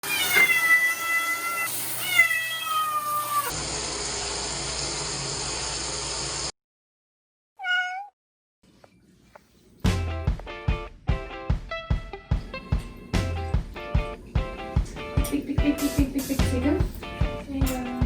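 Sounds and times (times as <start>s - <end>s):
kitten meowing: 0.0s - 3.5s, 7.6s - 8.1s.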